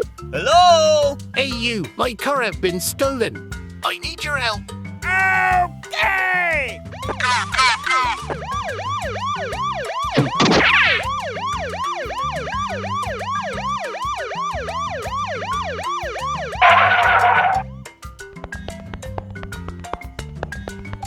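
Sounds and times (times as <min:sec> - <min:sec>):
background music: 0:00.0 - 0:21.0
cartoon siren wail: 0:05.1 - 0:17.6.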